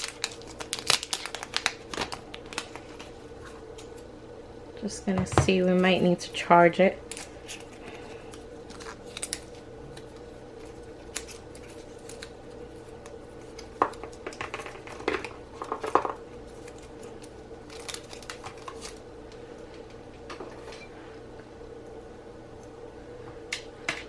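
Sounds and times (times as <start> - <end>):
packaging rustling and clicking: 0.0 - 4.0, 7.1 - 19.0
faint steady hum: 0.0 - 24.0.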